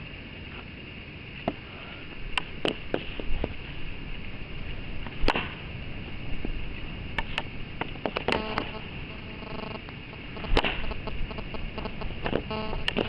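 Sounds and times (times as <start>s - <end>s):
steady hiss: 0.0s - 13.0s
sharp knocks and cracks: 5.0s - 5.6s, 10.4s - 11.4s, 12.2s - 13.0s.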